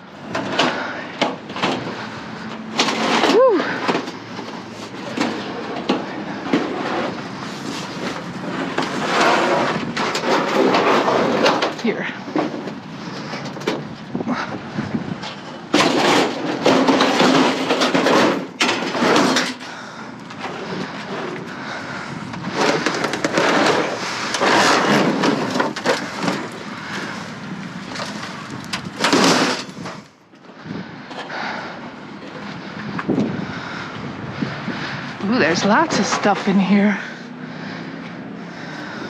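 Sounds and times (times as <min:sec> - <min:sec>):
rummaging through dumpster items: 0:00.0 - 0:39.0.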